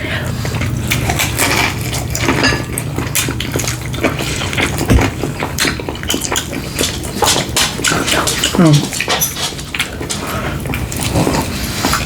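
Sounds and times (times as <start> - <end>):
chewing with wet mouth clicks: 0.4 - 12.0
low thump: 4.9 - 5.2.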